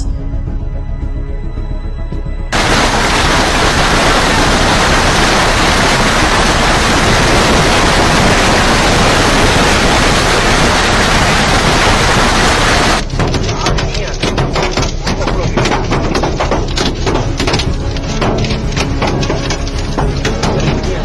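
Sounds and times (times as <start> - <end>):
strong storm wind roaring: 2.5 - 13.1
wind buffeting microphone: 2.6 - 13.0.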